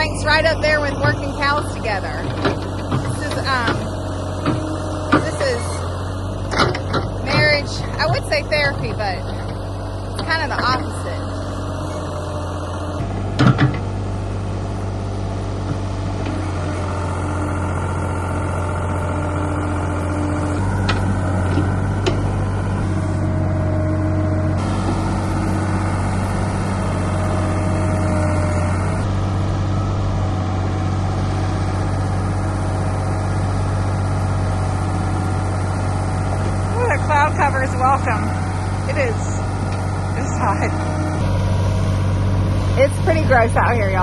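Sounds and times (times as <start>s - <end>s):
backhoe engine running: 0.0s - 44.0s.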